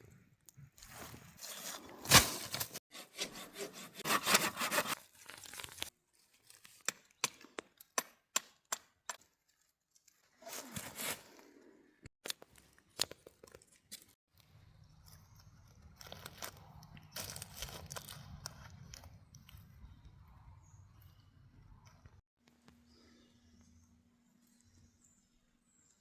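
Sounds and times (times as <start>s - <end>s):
rasping scrapes on wood: 2.9s - 5.0s.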